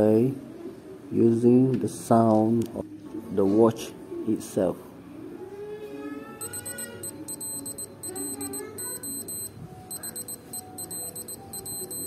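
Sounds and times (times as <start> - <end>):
digital watch beeping morse code: 6.4 - 12.0.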